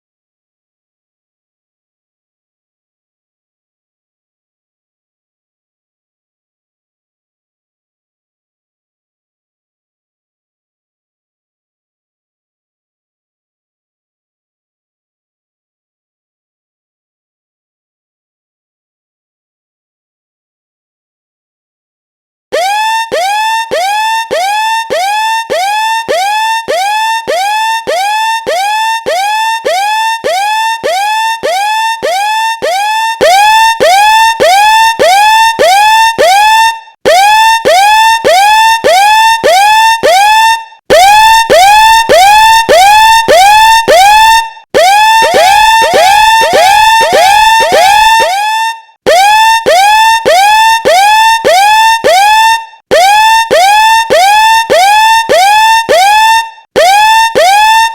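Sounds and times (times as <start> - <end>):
electronic alarm yelping: 22.6 - 57.9.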